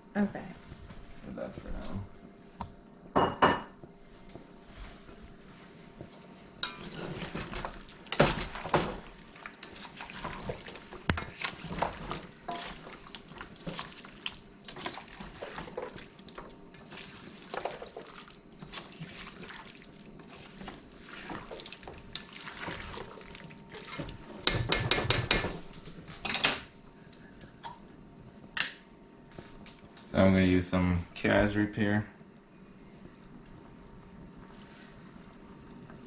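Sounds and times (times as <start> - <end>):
pots and utensils clinking: 6.6 - 13.0
liquid splashing: 7.2 - 24.3.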